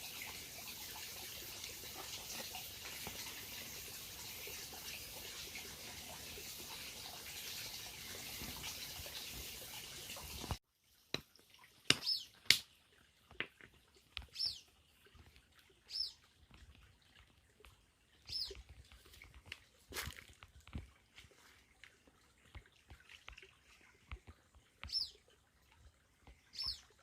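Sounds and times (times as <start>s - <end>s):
bird chirping: 26.5s - 26.9s.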